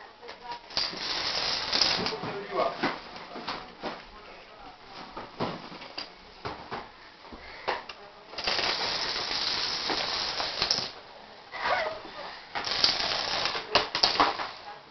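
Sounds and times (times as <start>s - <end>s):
dominoes toppling and clattering: 0.7s - 2.2s, 8.4s - 11.0s, 12.6s - 14.6s.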